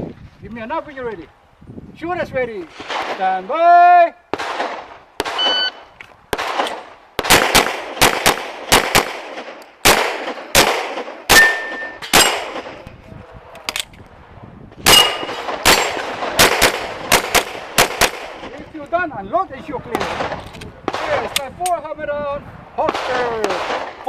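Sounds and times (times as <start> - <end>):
pistol shots: 4.3 - 12.8, 14.8 - 18.5, 22.9 - 24.0.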